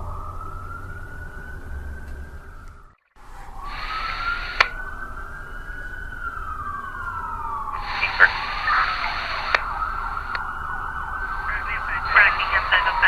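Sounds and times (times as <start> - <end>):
emergency siren wailing: 0.0 - 13.0
hiss: 3.5 - 4.9, 7.8 - 12.6
sharp clicks: 4.4 - 4.8, 7.9 - 10.5.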